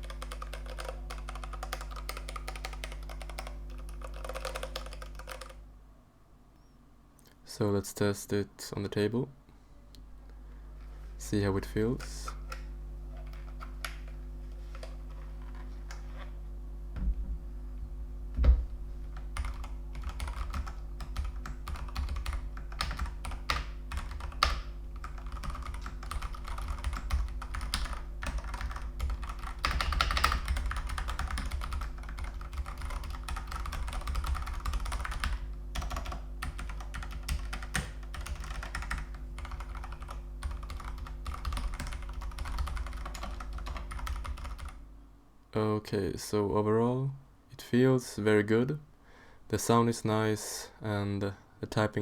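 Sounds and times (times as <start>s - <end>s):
fast mechanical keyboard typing: 0.0s - 5.6s, 19.1s - 44.8s
low steady hum: 0.0s - 52.0s.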